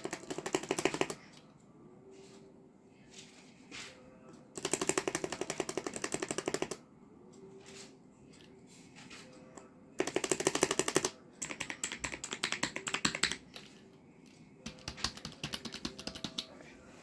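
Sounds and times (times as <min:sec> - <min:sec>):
keyboard typing: 0:00.0 - 0:01.4, 0:04.6 - 0:06.8, 0:09.6 - 0:13.9, 0:14.7 - 0:16.6.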